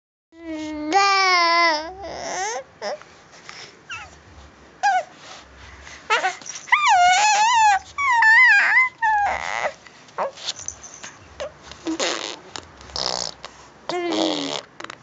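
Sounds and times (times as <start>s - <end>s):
baby squealing: 4.8s - 5.1s, 6.1s - 10.7s
baby blowing raspberry: 11.8s - 15.0s.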